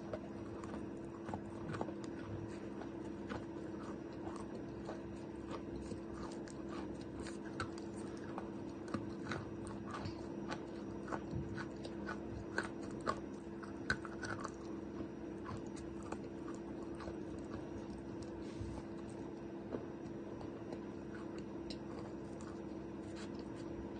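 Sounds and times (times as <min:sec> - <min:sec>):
chalk crunching while chewed: 0:00.0 - 0:23.9
steady low hum: 0:00.0 - 0:23.9.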